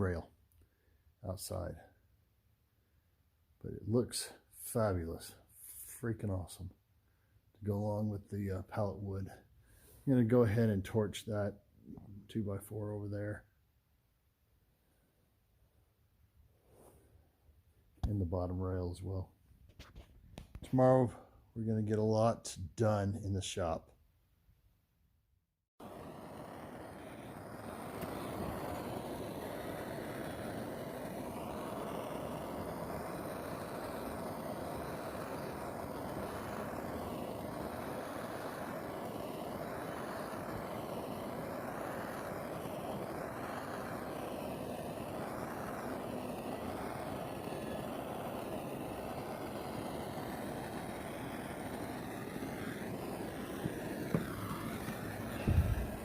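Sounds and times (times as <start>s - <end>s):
torch flame roaring: 25.8s - 56.0s.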